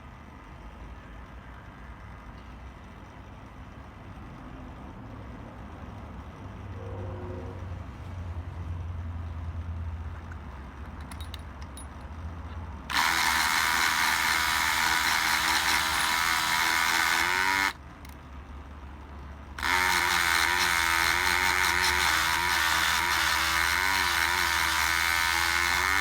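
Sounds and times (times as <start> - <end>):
rotary tool needle rattling: 10.3 - 18.2, 19.6 - 26.0.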